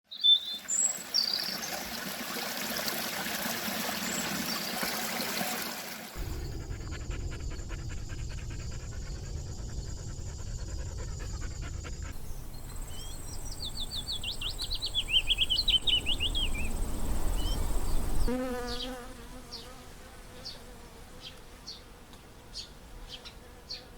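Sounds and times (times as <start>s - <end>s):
low rumble: 6.2s - 18.3s
insect-like chirring: 6.2s - 19.0s
birds chirping: 6.2s - 19.7s
steady rushing hiss: 6.2s - 20.3s
songbird trilling: 12.2s - 19.0s.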